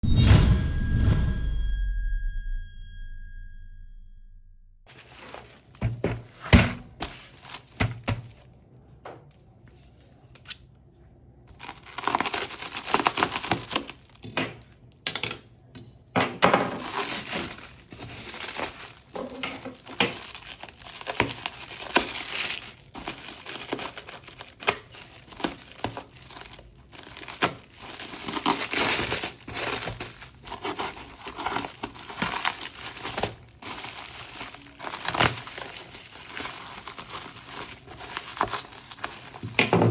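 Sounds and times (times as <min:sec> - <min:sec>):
plastic and paper crinkling: 0:04.9 - 0:08.6, 0:11.5 - 0:14.8, 0:16.5 - 0:39.9.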